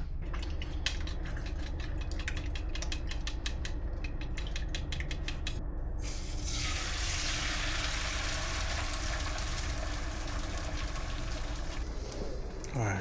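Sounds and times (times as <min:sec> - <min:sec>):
steady low hum: 0:00.0 - 0:13.0
food sizzling in a frying pan: 0:06.0 - 0:11.8.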